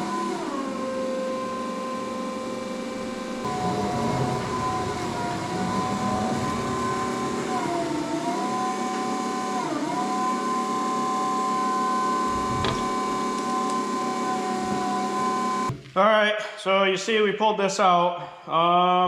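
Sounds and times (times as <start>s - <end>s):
machine whining: 2.8s - 10.2s.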